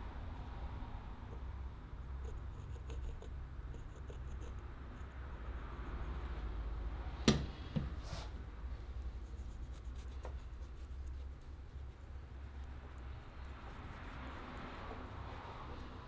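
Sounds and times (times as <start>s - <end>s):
sharp knocks: 7.3s - 8.0s
short scrape: 7.9s - 8.4s.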